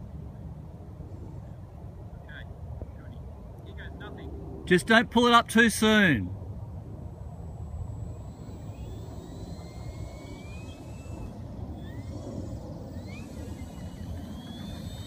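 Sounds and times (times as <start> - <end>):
model plane motor whining: 7.1 - 15.0.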